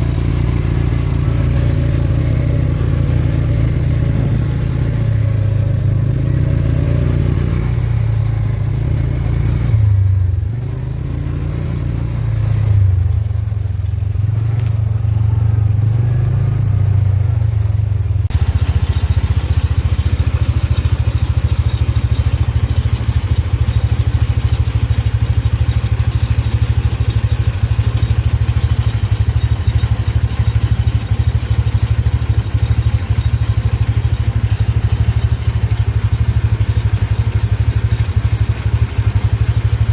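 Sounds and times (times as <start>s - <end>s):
tractor engine drone: 0.0s - 39.9s
baler mechanical clatter: 11.8s - 39.9s
rapid mechanical rattle: 11.8s - 39.9s.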